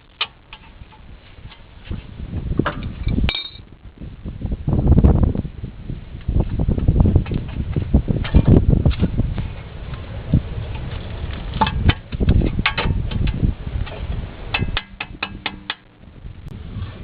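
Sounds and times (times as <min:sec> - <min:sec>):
metal knocks and clanks: 0:11.5 - 0:15.9.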